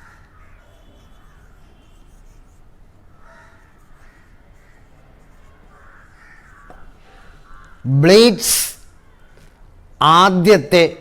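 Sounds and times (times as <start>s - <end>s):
crows cawing: 0.0s - 1.5s, 3.1s - 7.9s.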